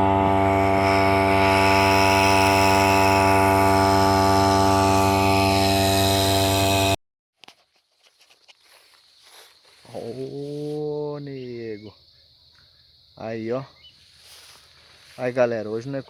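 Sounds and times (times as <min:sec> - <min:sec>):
small boat motor running: 0:00.0 - 0:07.0.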